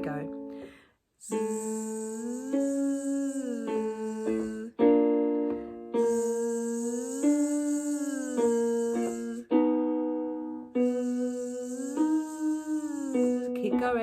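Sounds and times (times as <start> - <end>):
piano accompaniment: 0.0 - 14.0
person singing buzzed z sound: 1.2 - 5.1, 5.9 - 9.8, 10.7 - 14.0.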